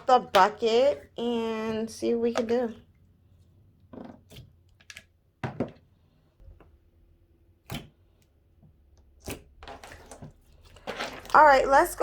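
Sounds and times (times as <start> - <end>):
slime squishing: 7.5 - 12.0.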